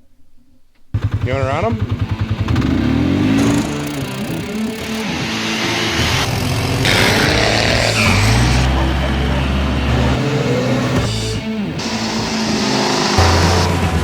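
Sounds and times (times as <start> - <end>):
vehicle engine revving: 1.0 - 14.0
steady low drone: 8.6 - 14.0.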